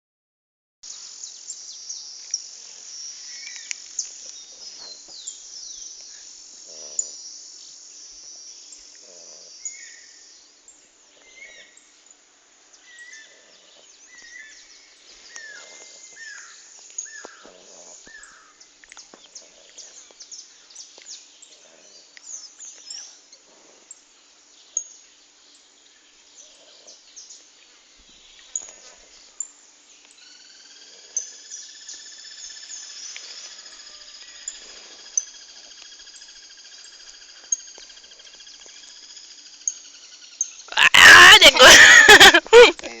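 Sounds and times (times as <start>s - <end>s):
insects chirring: 0.9s - 43.0s
soft snoring: 6.6s - 7.2s, 8.9s - 9.6s, 17.4s - 18.2s, 26.4s - 27.0s
birds calling: 12.8s - 21.6s, 39.6s - 43.0s.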